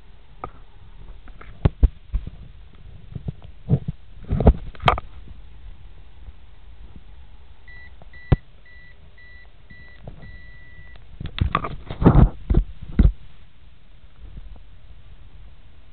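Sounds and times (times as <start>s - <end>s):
microwave oven beeping: 7.7s - 11.0s.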